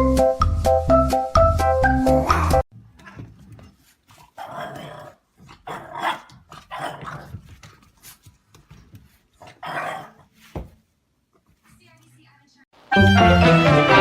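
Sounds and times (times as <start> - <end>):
dog growling and barking: 2.2 - 7.4, 9.4 - 10.3.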